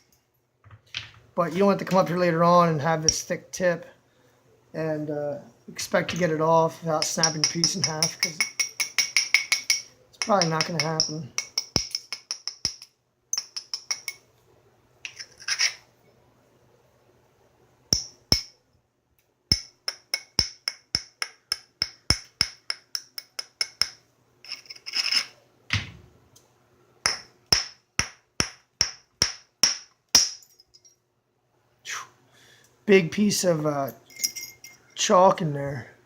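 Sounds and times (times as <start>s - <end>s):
hammer tapping on stone: 7.0s - 14.2s, 17.9s - 18.5s, 19.5s - 24.0s, 27.0s - 30.5s
stone scraping: 15.1s - 15.9s, 24.4s - 25.4s.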